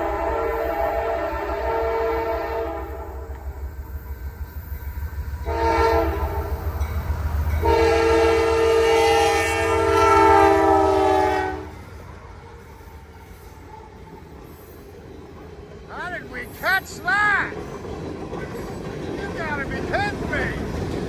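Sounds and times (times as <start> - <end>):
locomotive air horn blasts: 0.0 - 3.3, 5.5 - 6.5, 7.6 - 11.7
low rumble of passing train: 0.0 - 21.0.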